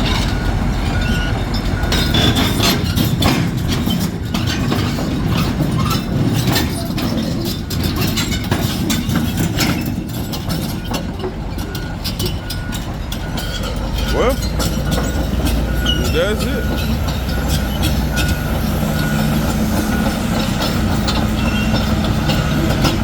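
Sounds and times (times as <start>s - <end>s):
diesel engine rumbling: 0.0s - 23.0s
steel tracks clanking: 0.0s - 23.0s.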